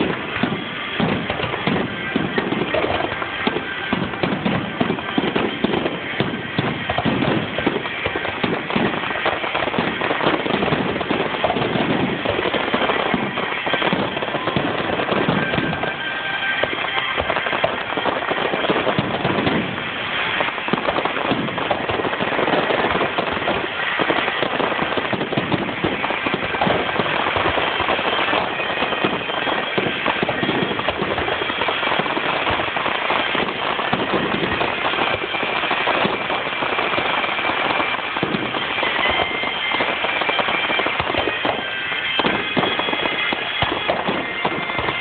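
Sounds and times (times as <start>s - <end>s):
fireworks bursting and crackling: 0.0s - 45.0s.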